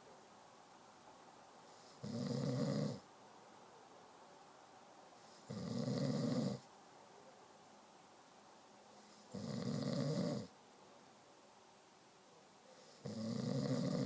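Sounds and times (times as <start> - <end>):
person snoring: 5.5 - 6.6, 9.3 - 10.5, 13.0 - 14.0.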